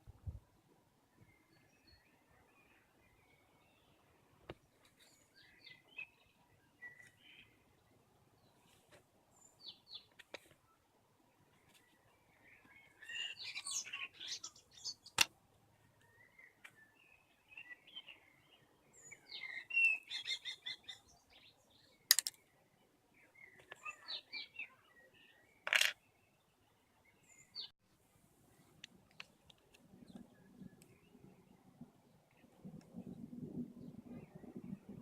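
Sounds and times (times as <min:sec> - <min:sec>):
small birds chirping: 0:01.1 - 0:10.7, 0:11.3 - 0:27.8.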